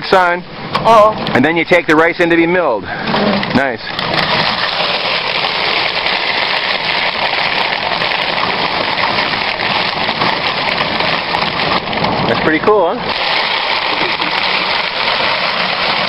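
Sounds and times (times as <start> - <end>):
rice thresher rushing hiss: 4.0 - 16.0.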